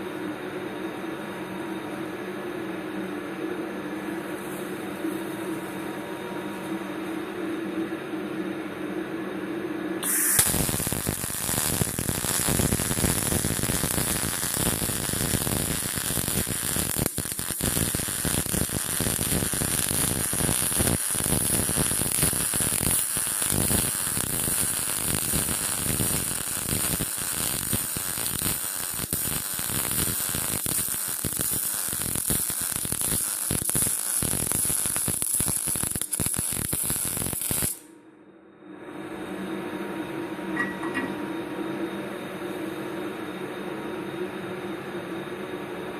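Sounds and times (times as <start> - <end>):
welder humming: 10.0 - 37.9
welding arc crackling: 10.0 - 37.9.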